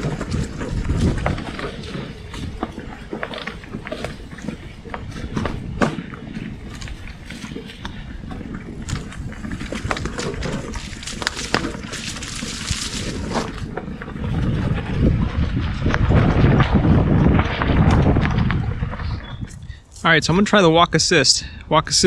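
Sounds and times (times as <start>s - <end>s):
bike knocking and rattling: 0.0s - 20.0s
wind on microphone: 0.0s - 20.5s
bike tyres rolling on dirt: 0.0s - 20.7s.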